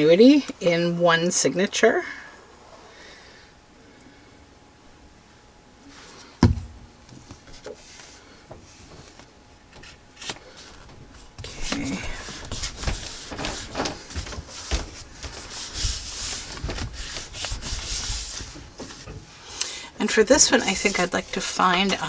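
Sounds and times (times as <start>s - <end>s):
paper rustling and scraping: 8.8s - 19.2s, 20.1s - 22.0s.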